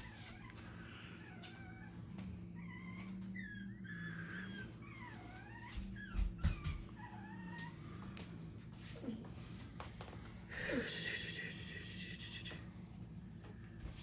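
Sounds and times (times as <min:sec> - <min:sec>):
animal whining: 0:00.0 - 0:08.0.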